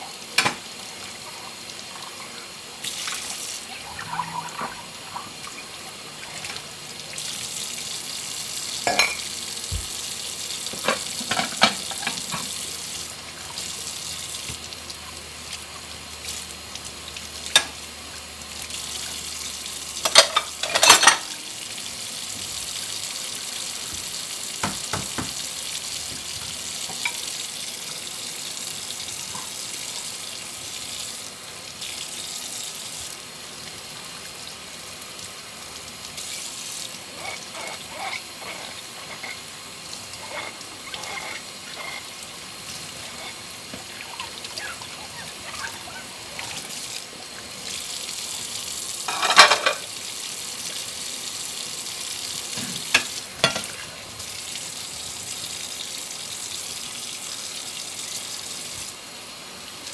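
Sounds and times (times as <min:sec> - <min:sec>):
running water and scrubbing: 0:00.0 - 0:14.7, 0:20.0 - 0:30.2, 0:33.6 - 0:50.0, 0:52.4 - 0:55.4
dishes clinking together: 0:08.8 - 0:09.9, 0:10.7 - 0:12.5, 0:20.0 - 0:21.4, 0:49.1 - 0:49.9, 0:52.6 - 0:53.8.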